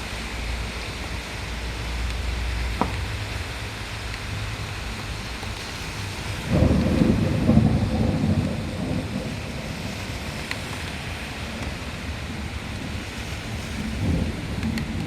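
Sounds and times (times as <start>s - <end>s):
heavy rain falling: 0.0s - 15.0s
thunder rumbling: 4.4s - 15.0s.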